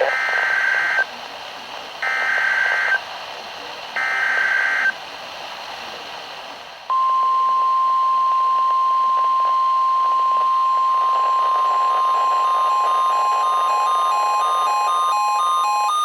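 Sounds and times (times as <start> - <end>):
steady warning alarm tone: 0.0 - 1.0, 2.0 - 3.0, 4.0 - 4.9
receiver hiss: 0.0 - 16.0.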